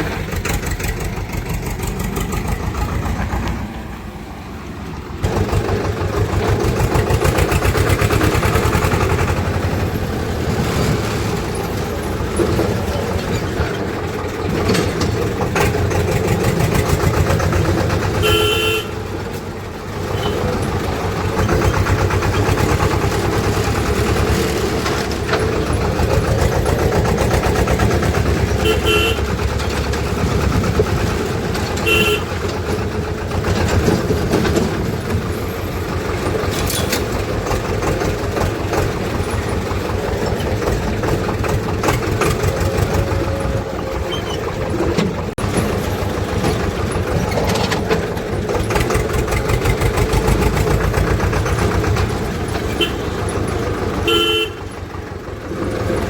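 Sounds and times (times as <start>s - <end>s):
tractor diesel engine running: 0.0s - 56.0s
short horn toots: 54.0s - 54.6s.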